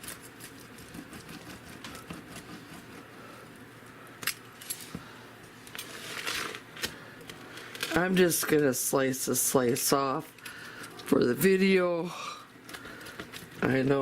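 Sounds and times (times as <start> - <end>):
knife slicing pizza crust: 0.0 - 3.1.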